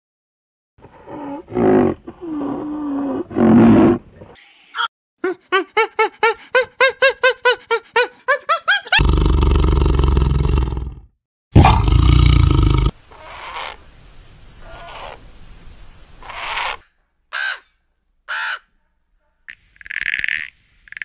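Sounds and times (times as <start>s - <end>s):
loud harsh animal roars: 9.0s - 12.9s.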